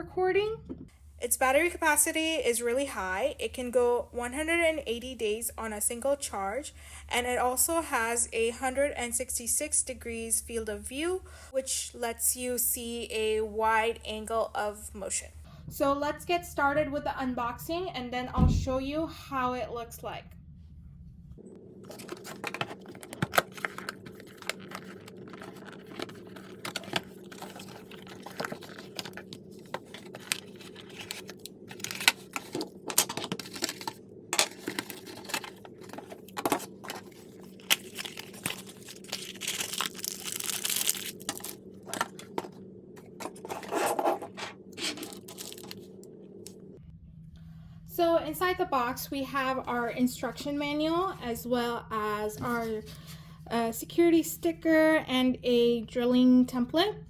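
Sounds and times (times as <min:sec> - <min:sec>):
packaging rustling: 0:21.8 - 0:45.9
cardboard box being opened: 0:21.9 - 0:42.3, 0:43.2 - 0:45.8.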